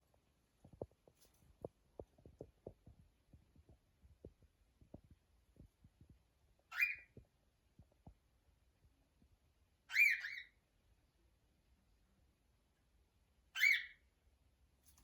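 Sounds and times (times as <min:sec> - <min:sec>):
faint taps and knocks: 0:00.1 - 0:06.4, 0:07.2 - 0:08.4
cockatiel call: 0:06.7 - 0:07.1, 0:09.9 - 0:10.6, 0:13.6 - 0:14.0.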